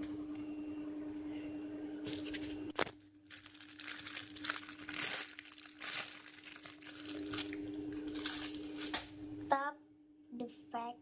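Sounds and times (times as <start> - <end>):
steady low hum: 0.0 - 11.0
plastic crinkling and rustling: 2.1 - 9.1.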